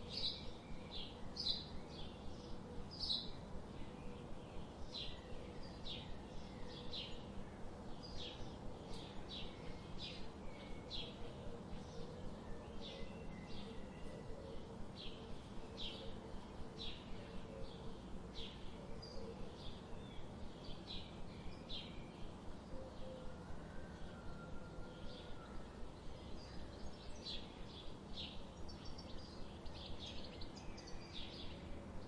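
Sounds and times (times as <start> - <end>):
low background noise: 0.0 - 32.0
small birds chirping: 26.0 - 31.7.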